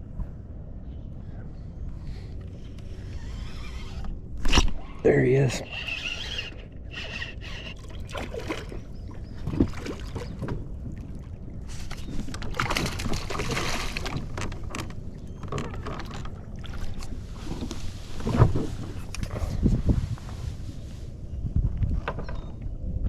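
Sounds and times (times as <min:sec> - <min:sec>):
water around boat: 0:00.0 - 0:23.0
wind buffeting microphone: 0:05.6 - 0:23.0.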